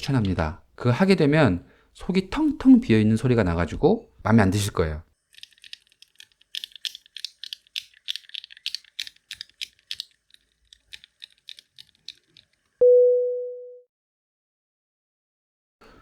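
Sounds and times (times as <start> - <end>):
rapid keyboard typing: 5.2 - 12.7
pure chime tone: 12.8 - 13.8.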